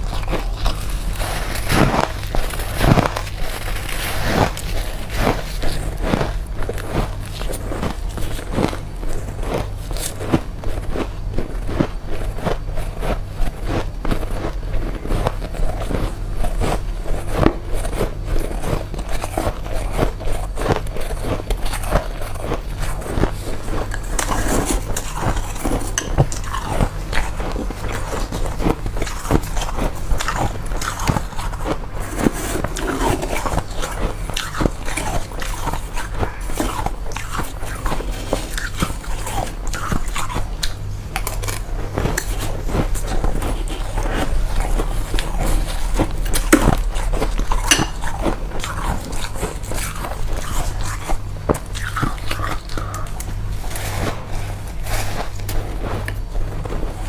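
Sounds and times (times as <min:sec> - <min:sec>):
chewing crunchy frost: 0:00.0 - 0:57.0.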